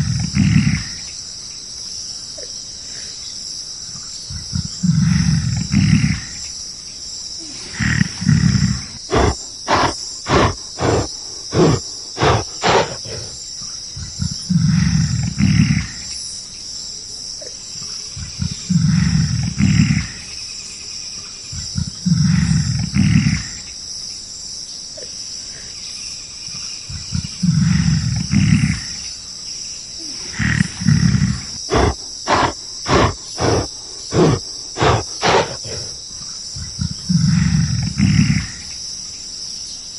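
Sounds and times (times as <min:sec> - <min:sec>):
gorilla roaring and growling: 0:00.0 - 0:01.1, 0:04.3 - 0:06.5, 0:07.4 - 0:13.4, 0:14.0 - 0:16.1, 0:18.2 - 0:20.4, 0:21.6 - 0:23.6, 0:26.9 - 0:29.1, 0:30.0 - 0:36.0, 0:36.6 - 0:38.7
high insect buzz: 0:00.0 - 0:39.9.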